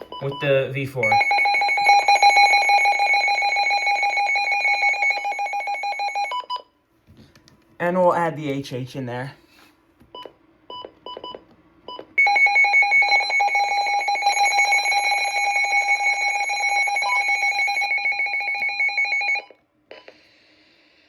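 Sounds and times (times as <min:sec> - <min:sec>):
pulsing multi-tone alarm: 0:01.0 - 0:06.6, 0:12.2 - 0:20.1.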